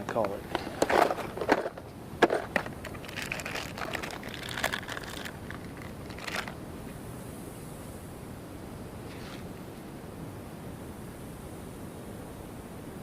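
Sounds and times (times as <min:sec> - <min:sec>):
faint hiss: 0:00.0 - 0:13.0
plastic crinkling and clicking: 0:00.1 - 0:06.6.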